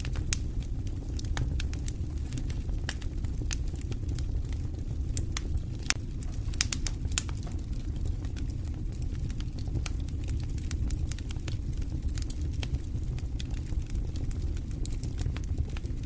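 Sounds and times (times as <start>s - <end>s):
fire crackling and popping: 0.0s - 16.0s
fire rumbling: 0.0s - 16.0s.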